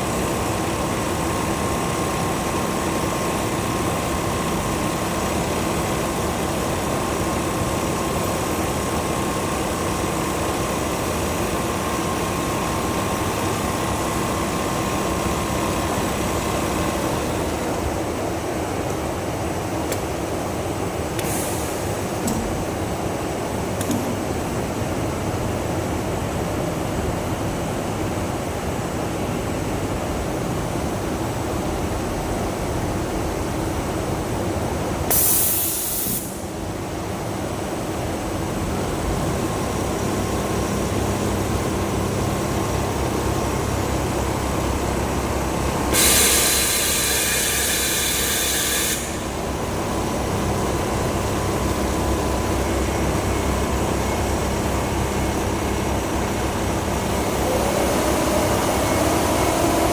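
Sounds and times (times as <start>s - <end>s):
loud burst of hiss: 35.1s - 36.4s, 45.9s - 49.4s.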